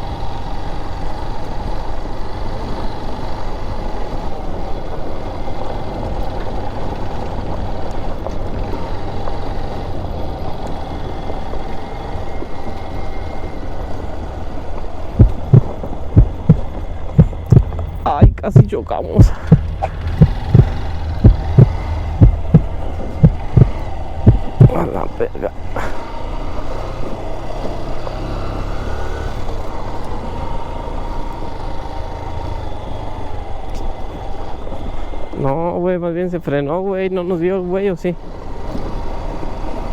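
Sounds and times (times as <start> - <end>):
dirt bike engine running: 0.0 - 35.7
sharp knock: 17.2 - 24.7.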